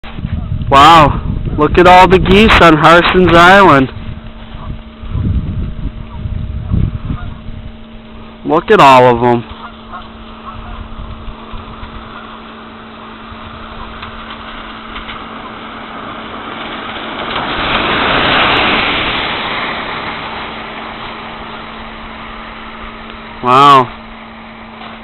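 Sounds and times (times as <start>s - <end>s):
steady low hum: 0.0s - 25.0s
vehicle passing: 9.6s - 24.8s.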